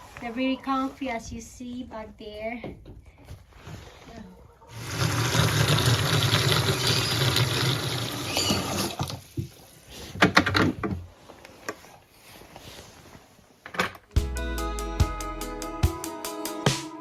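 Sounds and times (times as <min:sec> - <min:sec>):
water pouring from bucket: 0:04.7 - 0:09.9.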